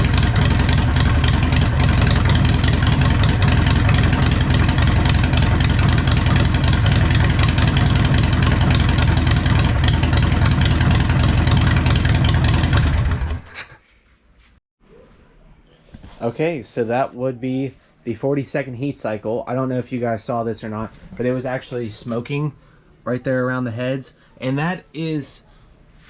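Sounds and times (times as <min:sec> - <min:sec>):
motorcycle engine running: 0:00.0 - 0:13.6.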